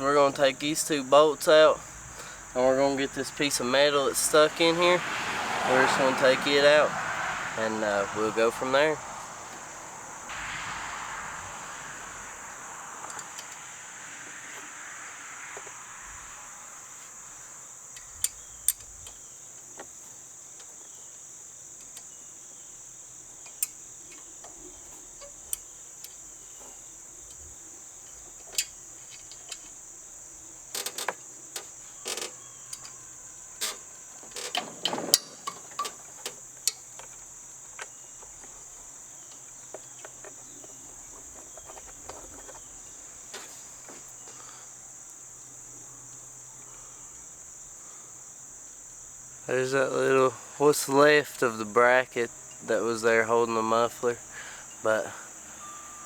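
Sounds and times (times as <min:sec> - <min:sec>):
crickets chirping: 0:00.0 - 0:56.0
hand tools clicking on metal: 0:17.9 - 0:19.9, 0:23.4 - 0:29.8, 0:30.7 - 0:33.0, 0:33.6 - 0:38.6.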